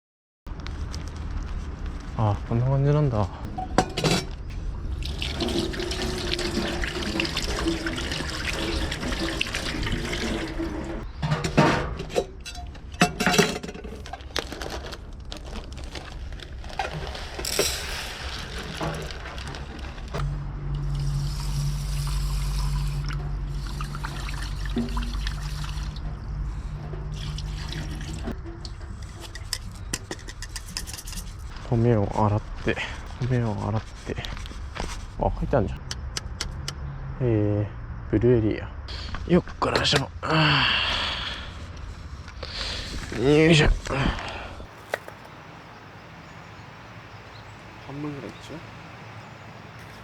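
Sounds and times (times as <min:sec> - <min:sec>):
tap water running into container: 0:05.0 - 0:11.0, 0:16.8 - 0:19.9, 0:20.8 - 0:26.1, 0:27.1 - 0:29.5.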